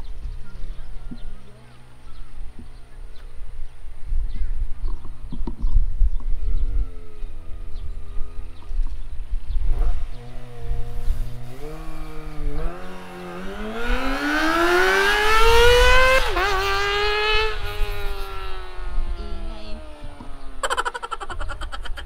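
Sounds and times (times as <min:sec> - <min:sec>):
motorcycle revving past: 0:07.2 - 0:20.8.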